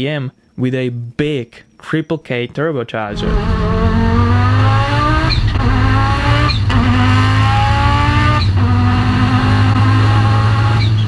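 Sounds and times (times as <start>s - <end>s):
race car engine at full throttle: 3.2s - 11.0s.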